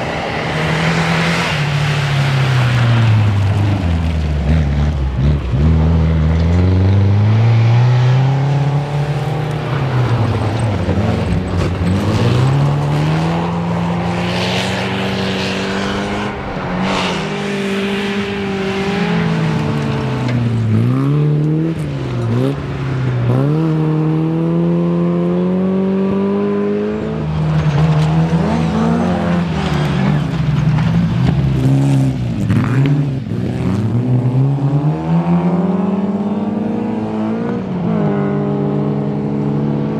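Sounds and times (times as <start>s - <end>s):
rally car engines at full throttle: 0.0s - 39.9s.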